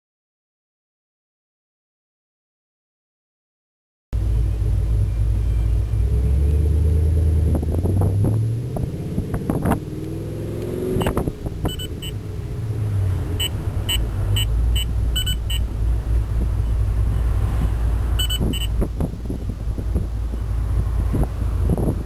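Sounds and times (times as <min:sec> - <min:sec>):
steady low rumble: 0:04.2 - 0:22.0
high electronic beeps: 0:10.9 - 0:12.2, 0:13.4 - 0:15.7, 0:18.2 - 0:18.8.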